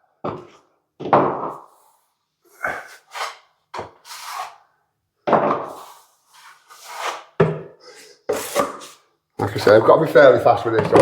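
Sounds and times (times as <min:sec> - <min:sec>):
trowel scraping wet plaster: 0:02.7 - 0:04.6, 0:05.7 - 0:09.0.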